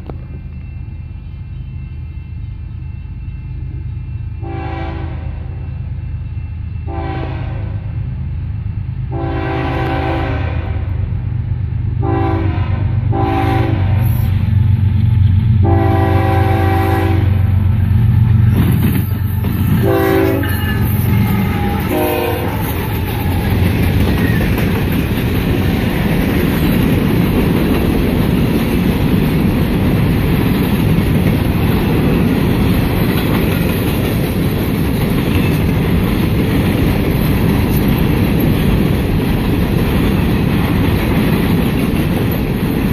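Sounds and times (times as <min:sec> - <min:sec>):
diesel engines rumbling: 0:00.0 - 0:42.9
train air horn blasts: 0:04.4 - 0:05.6, 0:06.8 - 0:08.0, 0:09.1 - 0:11.0, 0:12.0 - 0:14.4, 0:15.6 - 0:17.6, 0:19.2 - 0:23.6
train wheels clattering on rail: 0:13.9 - 0:42.9.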